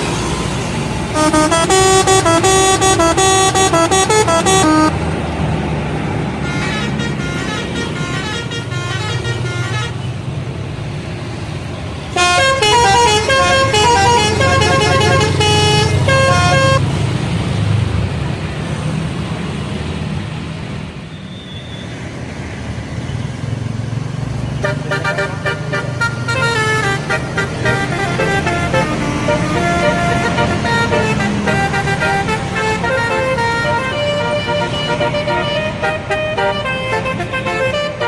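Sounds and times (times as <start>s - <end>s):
bus engine rumble: 0.0s - 38.0s
musical bus air horn tune: 1.1s - 5.0s, 6.4s - 10.2s, 12.2s - 16.8s, 24.6s - 38.0s.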